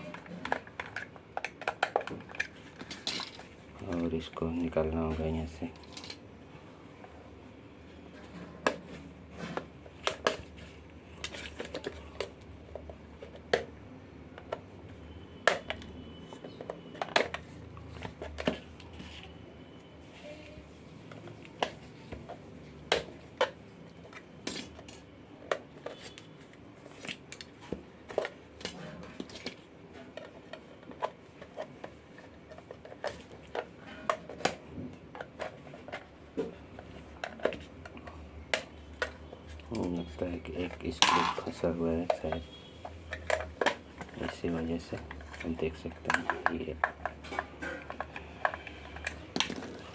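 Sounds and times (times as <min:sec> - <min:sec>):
tools clicking on hard plastic: 0:00.0 - 0:04.4, 0:14.4 - 0:19.2, 0:26.9 - 0:49.9.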